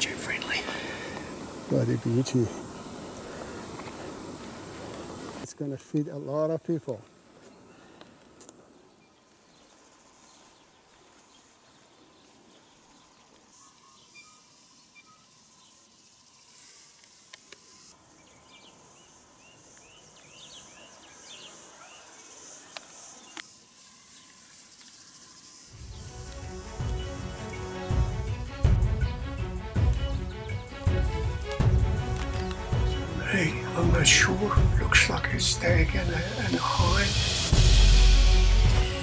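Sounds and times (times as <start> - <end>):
high insect hiss: 0.0 - 39.0
sharp clicks: 31.3 - 32.9.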